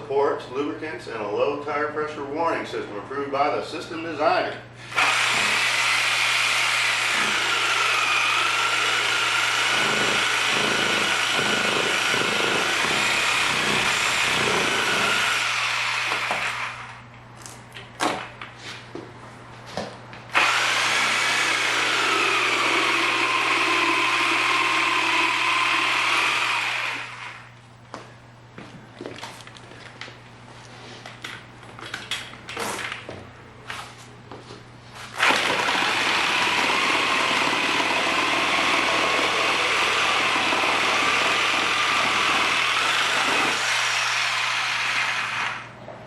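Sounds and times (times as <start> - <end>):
electric saw cutting tire: 4.8 - 17.0, 20.3 - 27.5, 35.2 - 45.8.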